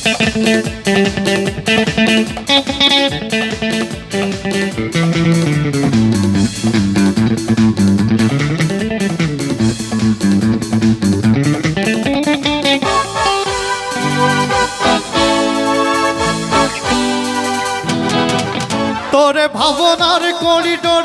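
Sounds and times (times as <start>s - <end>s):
bass guitar: 0.0s - 19.2s
guitar melody: 0.0s - 19.2s
steady drum beat: 0.0s - 21.0s
held keyboard chord: 12.8s - 19.2s.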